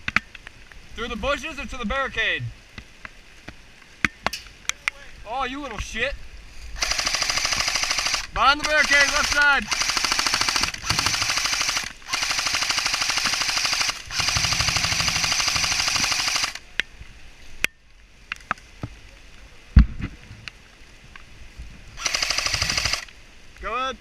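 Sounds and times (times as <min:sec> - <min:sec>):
airsoft gun firing full auto: 0:06.8 - 0:16.6, 0:22.0 - 0:23.1
sharp ticks: 0:06.8 - 0:16.6, 0:22.0 - 0:23.1.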